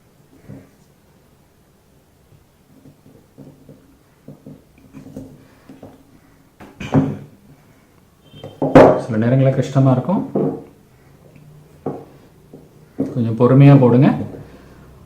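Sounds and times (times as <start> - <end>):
loud knock: 8.4 - 9.0.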